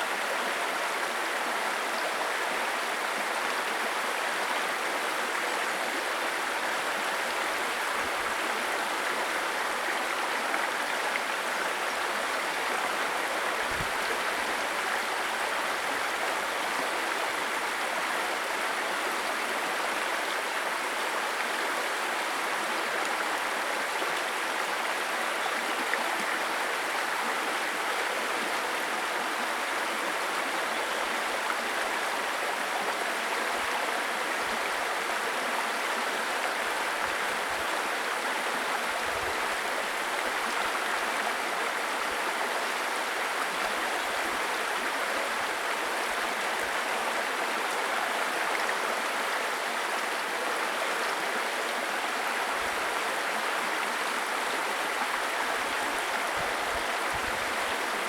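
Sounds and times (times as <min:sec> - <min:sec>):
stream splashing over stones: 0:12.1 - 0:16.3.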